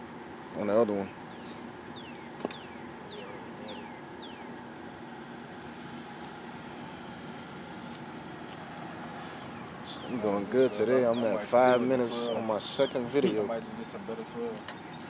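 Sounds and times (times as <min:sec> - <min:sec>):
small bird calling: 0:01.2 - 0:05.2.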